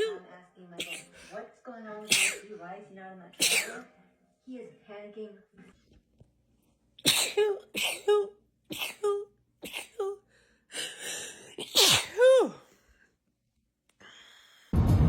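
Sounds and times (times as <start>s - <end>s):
woman sneezing: 0.8s - 1.3s, 2.0s - 2.5s, 3.4s - 3.9s, 7.0s - 10.2s, 11.5s - 12.6s.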